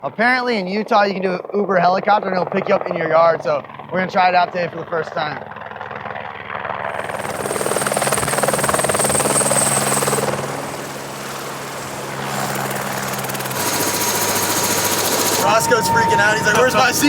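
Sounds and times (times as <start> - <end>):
helicopter rotor chop: 0.1 - 17.0
high whine: 6.9 - 17.0.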